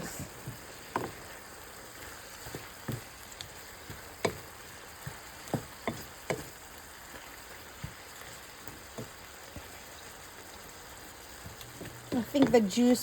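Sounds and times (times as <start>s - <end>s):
spinach sizzling in a frying pan: 0.0s - 13.0s
sharp clicks and knocks: 2.4s - 6.6s.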